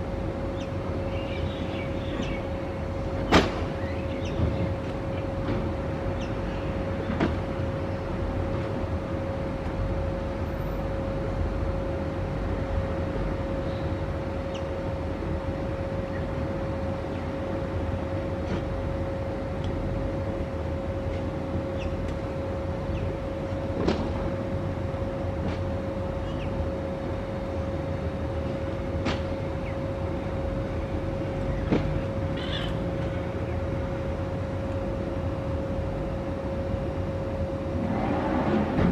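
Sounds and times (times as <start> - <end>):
mechanical hum: 0.0 - 38.9
raven cawing: 32.4 - 32.8.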